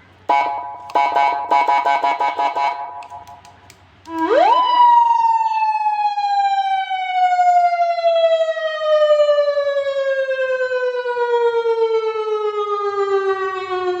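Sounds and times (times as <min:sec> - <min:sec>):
siren winding down: 0:04.1 - 0:14.0.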